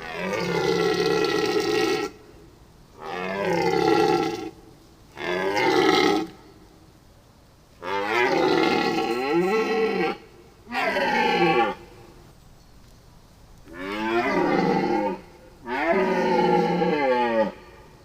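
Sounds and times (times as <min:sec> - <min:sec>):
farm animal calling: 0:07.9 - 0:12.1, 0:13.7 - 0:17.9.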